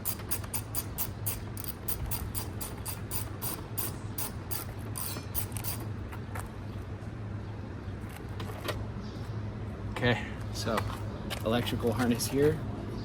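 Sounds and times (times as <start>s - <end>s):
ratchet wrench clicking: 0.0s - 5.9s.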